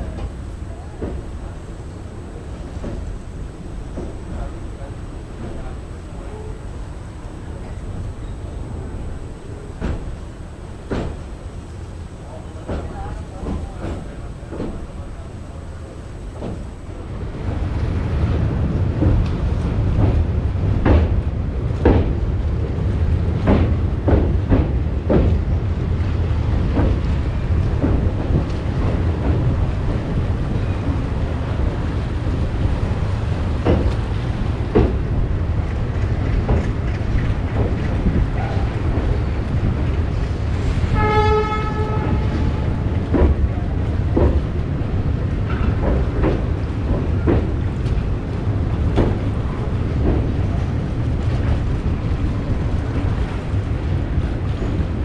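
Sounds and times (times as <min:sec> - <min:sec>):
train rumbling: 0:00.0 - 0:55.0
locomotive horn: 0:40.9 - 0:42.8.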